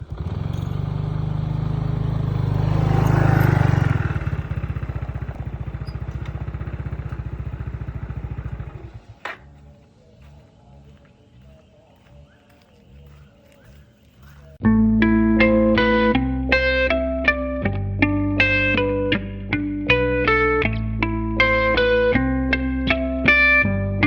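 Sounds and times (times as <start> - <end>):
engine running and revving: 0.0 - 10.4.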